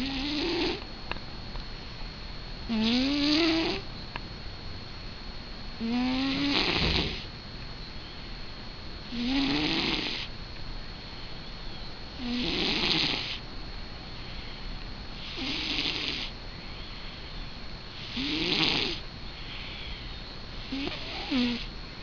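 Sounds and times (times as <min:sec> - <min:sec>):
cat snoring: 0:00.0 - 0:00.8, 0:02.7 - 0:03.8, 0:05.8 - 0:07.3, 0:09.1 - 0:10.3, 0:12.2 - 0:13.4, 0:15.2 - 0:16.3, 0:17.9 - 0:19.0, 0:20.6 - 0:21.7.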